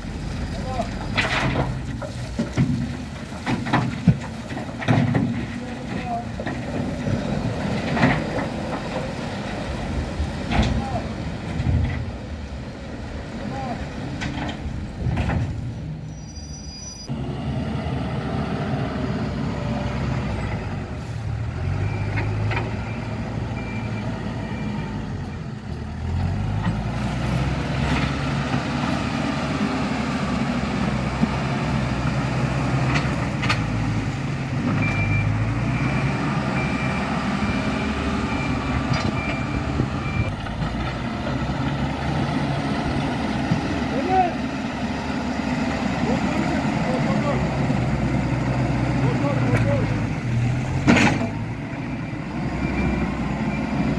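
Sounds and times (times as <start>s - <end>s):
heavy diesel engines running: 0.0s - 53.9s
reversing alarm beeping: 34.8s - 40.4s, 51.8s - 53.9s.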